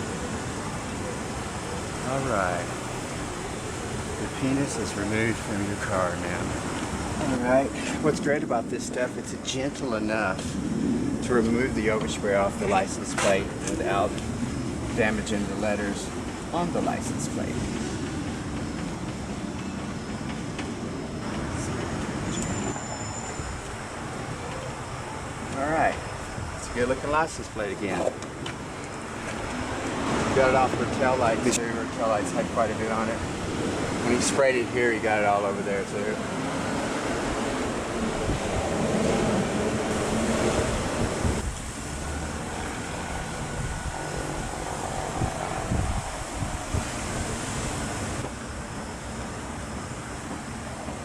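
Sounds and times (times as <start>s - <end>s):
wind buffeting microphone: 0.0s - 48.7s
low rumbling background noise: 0.0s - 51.0s
steady rushing noise: 0.0s - 51.0s
thin high tone: 21.6s - 25.9s.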